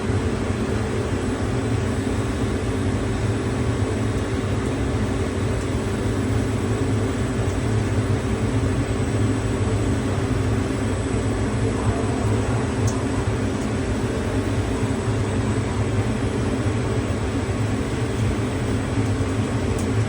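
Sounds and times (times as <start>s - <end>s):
machine tool humming: 8.9s - 20.0s
faint high whine: 10.5s - 16.4s.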